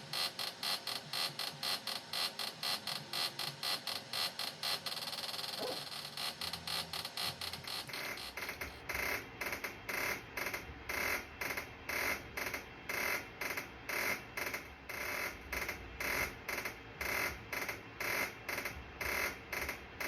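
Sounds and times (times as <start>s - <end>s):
electronic buzzing pulses: 0.0s - 9.0s.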